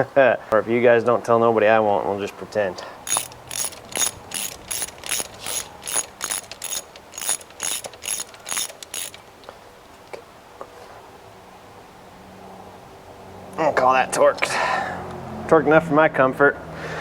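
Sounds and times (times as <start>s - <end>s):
ratchet wrench clicking: 3.1s - 9.2s.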